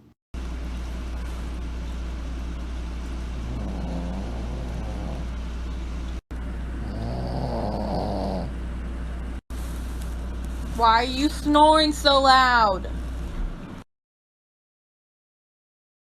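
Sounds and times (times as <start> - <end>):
steady low hum: 0.0 - 13.8
animal snoring: 3.3 - 5.4, 6.8 - 8.6.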